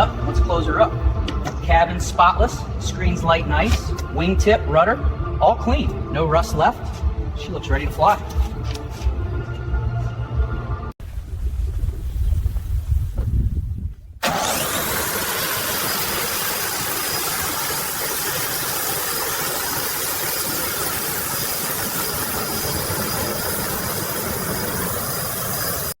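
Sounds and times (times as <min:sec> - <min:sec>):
jet engine idling: 0:14.2 - 0:26.0.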